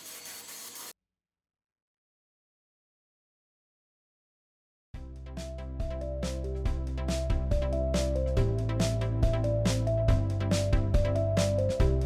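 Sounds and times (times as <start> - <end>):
electronic music with steady beat: 5.0 - 12.0.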